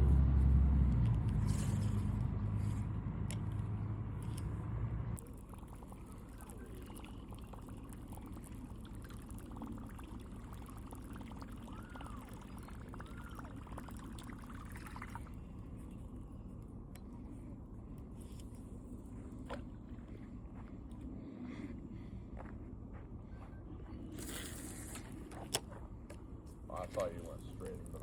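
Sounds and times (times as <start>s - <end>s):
water trickling and pouring: 5.2s - 15.7s.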